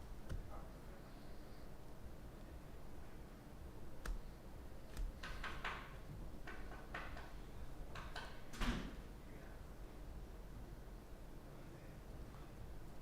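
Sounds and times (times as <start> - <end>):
trading cards clicking and swishing: 4.0 - 5.6.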